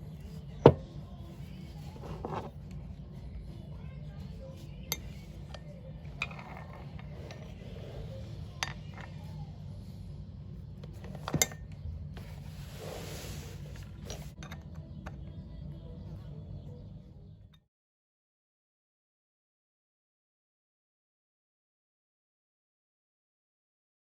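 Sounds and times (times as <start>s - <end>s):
steady low hum: 0.0s - 17.6s.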